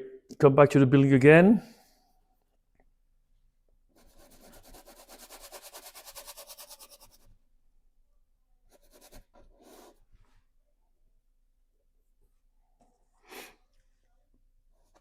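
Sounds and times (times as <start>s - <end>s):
paintbrush scrubbing paint: 3.9s - 7.3s.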